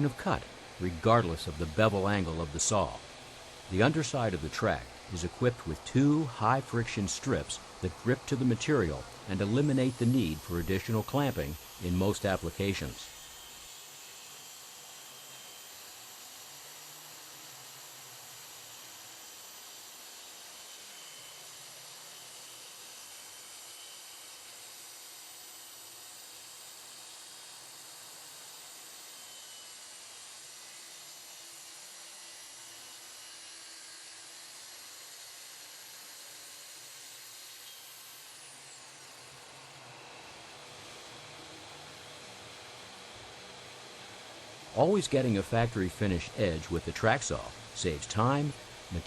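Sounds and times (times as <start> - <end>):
track saw cutting plywood: 0.0 - 49.0.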